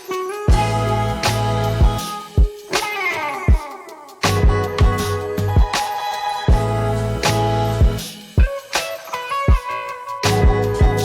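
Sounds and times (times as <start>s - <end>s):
funk soul music: 0.0s - 11.0s
guitar: 0.0s - 11.0s
kick drum beat: 0.5s - 0.8s, 1.8s - 2.6s, 3.5s - 5.8s, 6.5s - 6.8s, 7.8s - 8.6s, 10.4s - 11.0s
bass: 0.5s - 2.1s, 4.2s - 5.8s, 6.5s - 8.1s, 10.2s - 11.0s.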